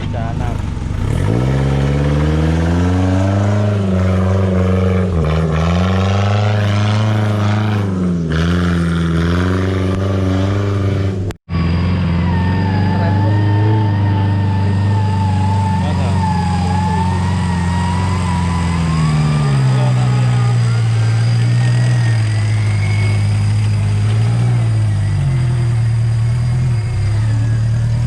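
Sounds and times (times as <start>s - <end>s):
off-road vehicle engine revving: 0.0s - 28.0s
wavering high whine: 11.5s - 28.0s.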